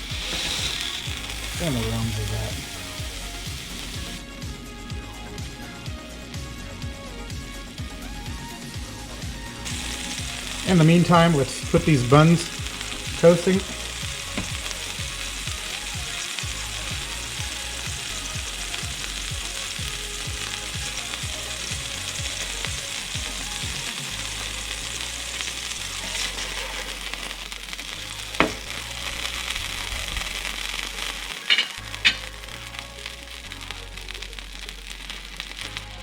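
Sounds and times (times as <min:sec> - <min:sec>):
burger patty sizzling: 0:00.0 - 0:36.0.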